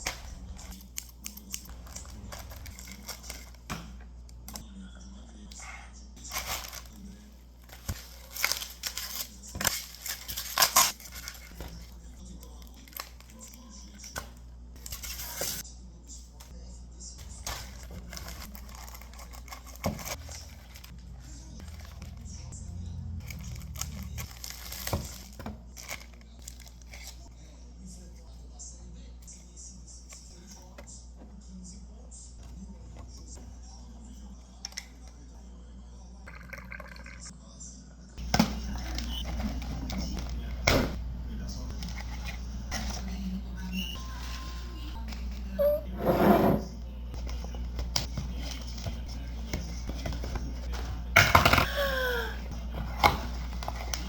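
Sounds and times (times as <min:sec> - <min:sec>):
faint background music: 0:00.0 - 0:54.0
plastic packaging crinkling and tearing: 0:00.6 - 0:03.7, 0:07.7 - 0:14.1, 0:17.4 - 0:22.4, 0:23.2 - 0:27.3
plastic packaging crinkling: 0:17.4 - 0:22.4, 0:23.2 - 0:27.3.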